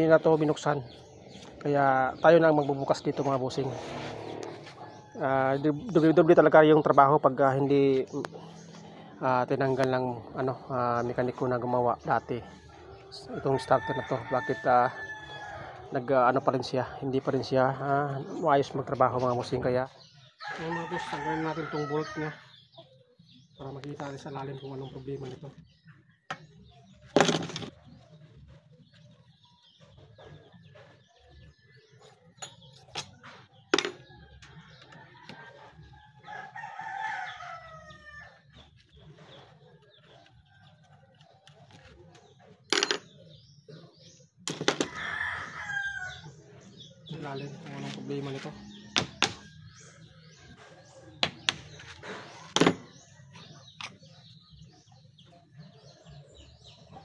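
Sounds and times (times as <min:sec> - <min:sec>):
faint birds chirping: 0:00.0 - 0:57.0
sharp knocks and clicks: 0:49.0 - 0:49.4.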